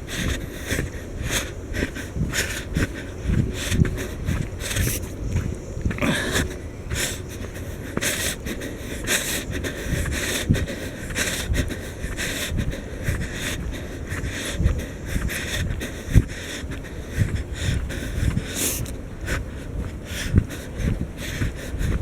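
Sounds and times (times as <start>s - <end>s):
person breathing hard: 0.0s - 22.0s
steady low rumble: 0.0s - 22.0s.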